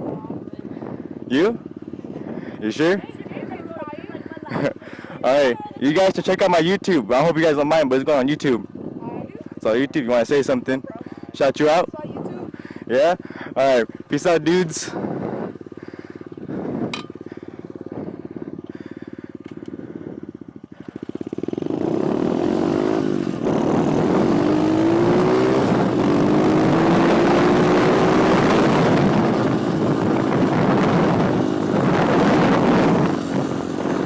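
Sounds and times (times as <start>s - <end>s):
motorbike engine revving: 12.4s - 34.0s.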